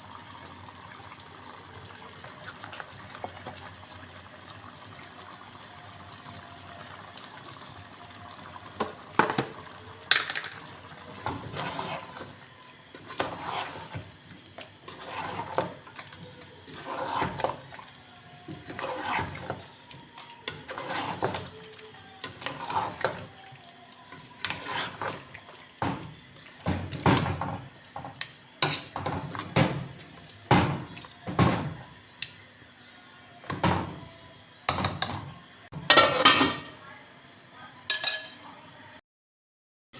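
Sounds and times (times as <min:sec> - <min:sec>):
dishes clattering: 0:09.2 - 0:11.4, 0:35.8 - 0:36.7, 0:37.9 - 0:38.4.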